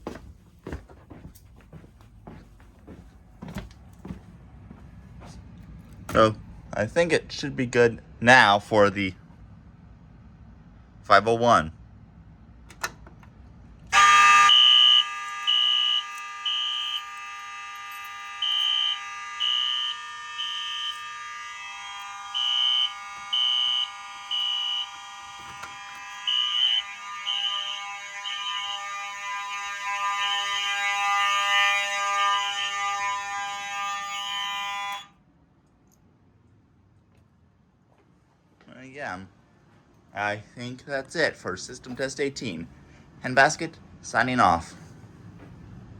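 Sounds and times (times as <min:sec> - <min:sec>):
pulsing high fire alarm horn: 0:13.9 - 0:35.2
steady multi-tone alarm horn: 0:13.9 - 0:35.2.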